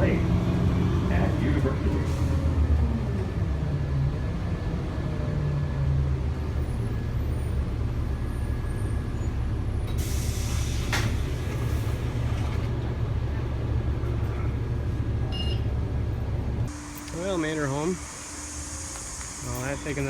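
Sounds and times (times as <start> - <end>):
bus engine rumbling: 0.0 - 20.0
air brake release hiss: 9.9 - 12.0, 16.7 - 20.0.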